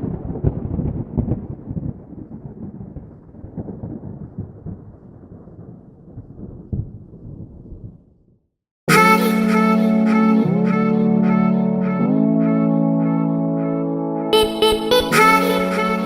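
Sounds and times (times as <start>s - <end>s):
rolling thunder: 0.0s - 8.3s.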